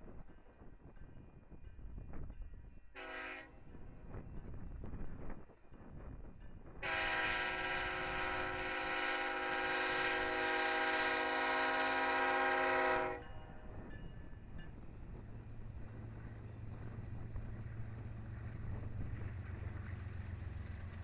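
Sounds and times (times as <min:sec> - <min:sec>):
low rumble of passing train: 0:00.0 - 0:21.0
locomotive air horn blasts: 0:03.0 - 0:03.6, 0:06.8 - 0:13.6.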